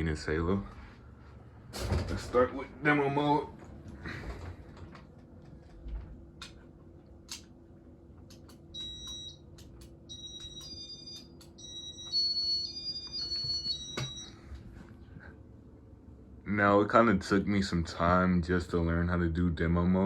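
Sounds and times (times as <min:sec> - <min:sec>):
low steady hum: 0:00.0 - 0:20.0
sharp clicks: 0:07.2 - 0:07.5, 0:08.2 - 0:11.6.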